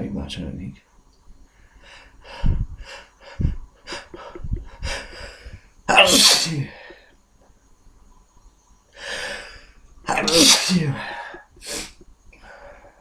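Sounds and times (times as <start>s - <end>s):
loud burst of breath: 9.0s - 9.8s
man sniffing through nose: 9.0s - 12.0s.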